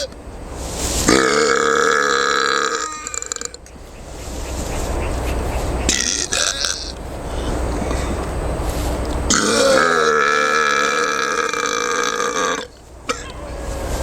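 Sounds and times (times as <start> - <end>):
low rough rumble: 0.0 - 14.0
man burping: 1.1 - 3.6, 5.9 - 7.0, 9.3 - 13.4.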